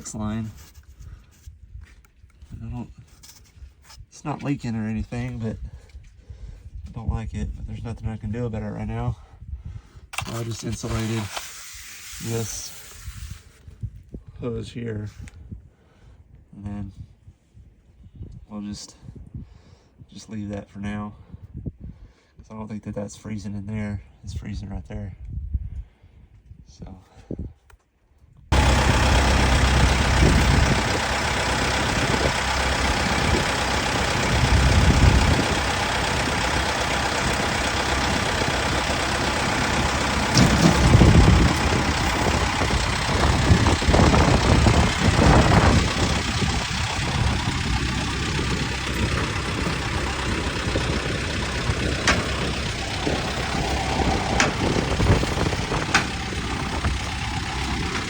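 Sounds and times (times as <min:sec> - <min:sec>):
engine running: 0:28.5 - 0:58.0
sharp clicks: 0:28.7 - 0:58.0.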